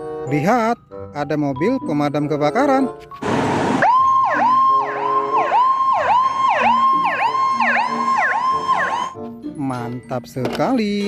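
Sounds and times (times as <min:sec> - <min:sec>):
fire engine siren swooping: 0:03.2 - 0:09.2.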